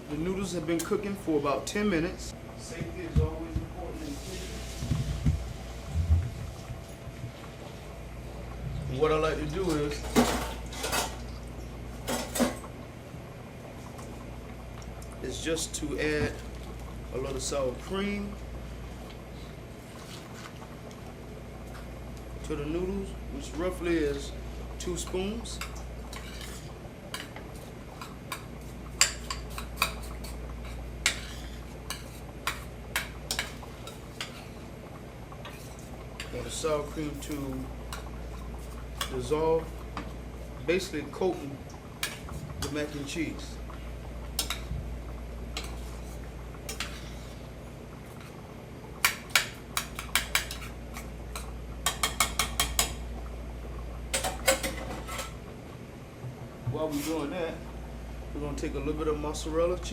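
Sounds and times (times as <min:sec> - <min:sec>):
utensil clinking against a pot: 0:44.3 - 0:44.7, 0:49.0 - 0:53.0, 0:54.1 - 0:55.4.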